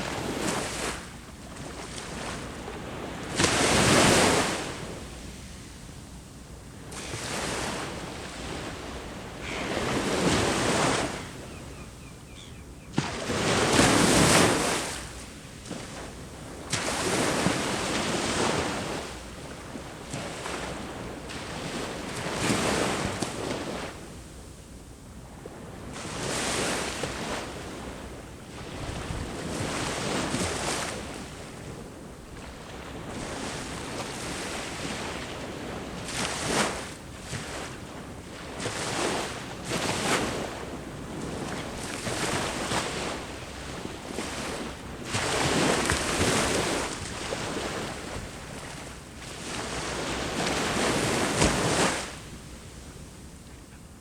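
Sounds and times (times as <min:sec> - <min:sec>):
ocean waves breaking on shore: 0:00.0 - 0:24.2, 0:25.2 - 0:54.0.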